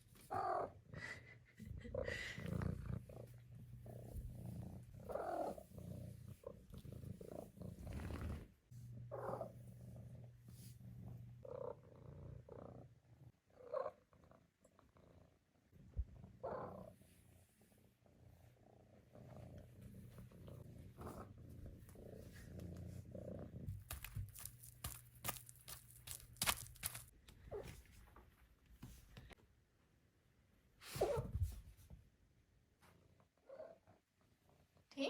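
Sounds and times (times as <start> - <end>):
kitten purring: 0.2 - 24.9.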